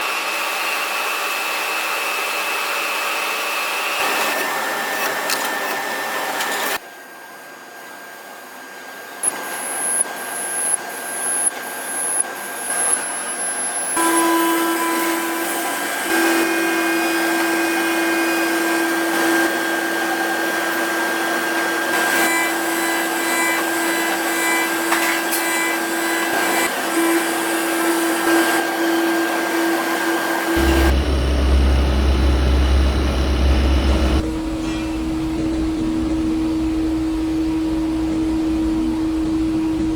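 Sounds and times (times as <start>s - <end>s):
cnc machine whine: 0.0s - 6.8s, 7.5s - 39.9s
short rising whines: 30.5s - 39.9s.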